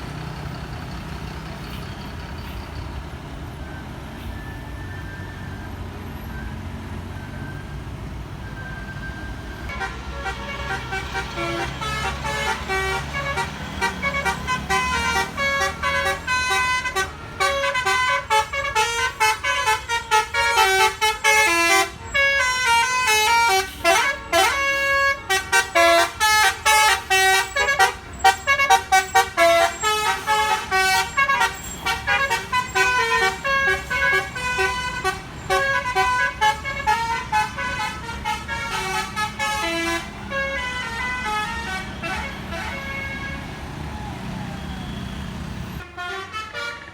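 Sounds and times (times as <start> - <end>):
musical bus air horn tune: 9.6 - 43.6, 44.4 - 46.9.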